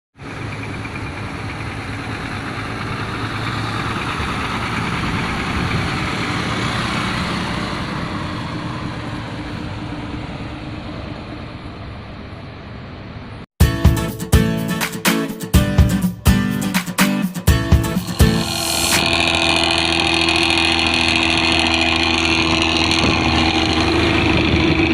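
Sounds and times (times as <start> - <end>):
deep vehicle exhaust rumble: 0.2 - 12.4, 17.7 - 24.9.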